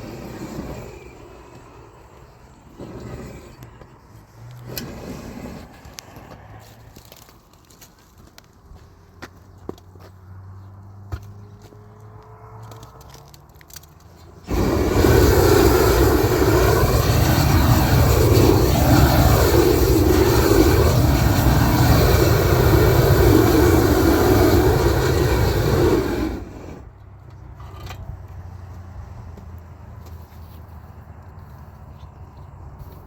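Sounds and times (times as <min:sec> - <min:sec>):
gas torch roaring: 0:00.0 - 0:07.2, 0:14.4 - 0:27.0.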